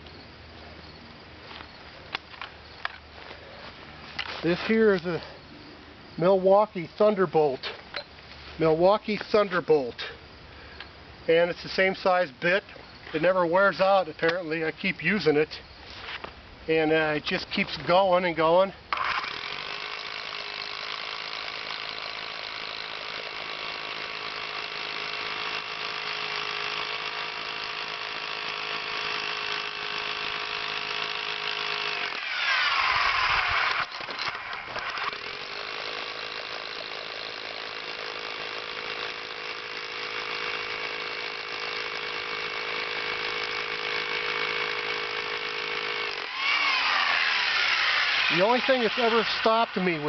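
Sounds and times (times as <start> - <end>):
rotary hammer drilling concrete: 18.9 - 50.0.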